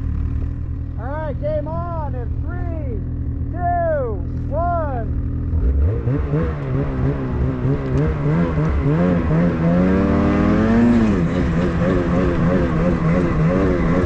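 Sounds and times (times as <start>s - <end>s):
engine revving under load: 5.1s - 14.0s.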